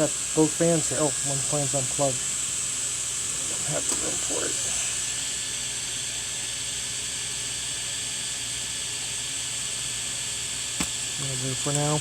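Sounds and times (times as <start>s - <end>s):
computer fans hissing: 0.0s - 6.2s, 10.4s - 12.0s.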